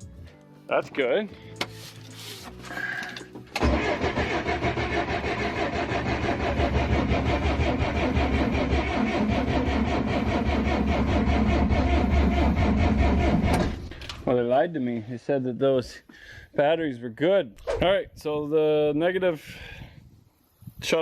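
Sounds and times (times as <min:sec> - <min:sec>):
diesel engine cranking: 0:02.7 - 0:14.3.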